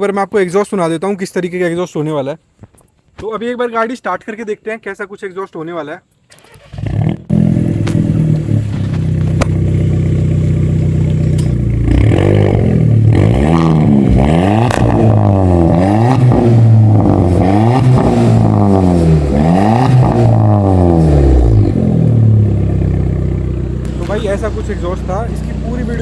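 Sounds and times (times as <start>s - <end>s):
car engine starting: 6.3s - 26.0s
engine revving: 6.4s - 26.0s
car engine idling: 7.3s - 26.0s.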